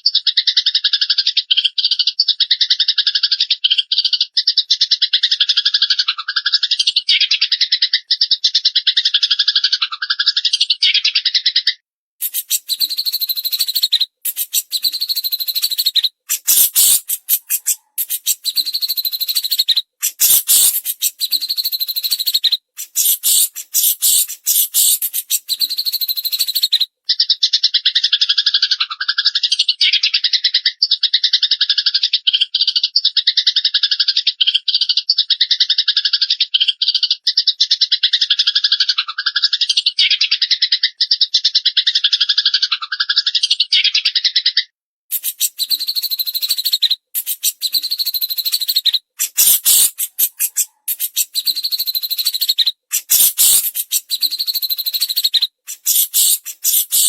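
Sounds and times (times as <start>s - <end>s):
bird fast trill: 12.2s - 26.9s, 45.1s - 57.0s
songbird chattering: 12.2s - 27.5s, 45.1s - 57.0s.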